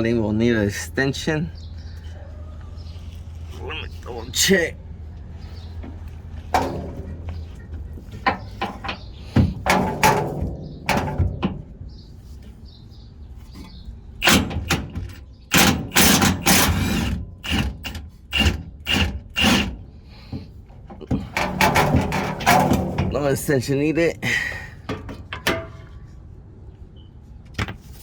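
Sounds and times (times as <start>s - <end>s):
tools clattering on metal: 24.9s - 26.0s.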